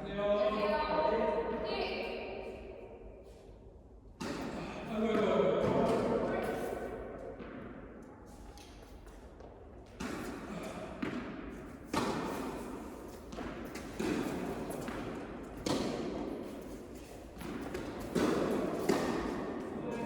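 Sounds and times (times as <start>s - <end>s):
tennis ball hits and bounces: 9.8s - 19.6s.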